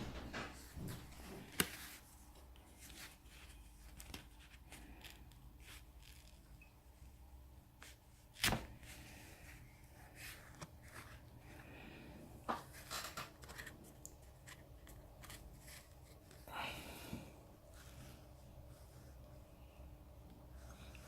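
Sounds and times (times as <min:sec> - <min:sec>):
plastic card clicking and scraping: 0:12.6 - 0:16.4.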